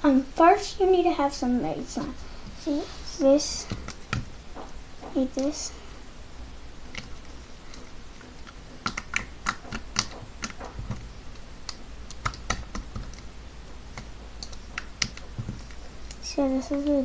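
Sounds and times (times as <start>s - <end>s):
sharp clicks and taps: 3.5s - 5.6s, 6.8s - 17.0s.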